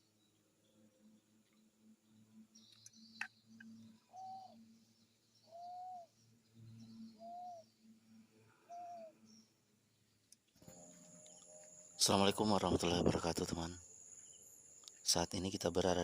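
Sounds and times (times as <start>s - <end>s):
bird whistling notes: 5.4s - 6.2s, 6.9s - 7.7s.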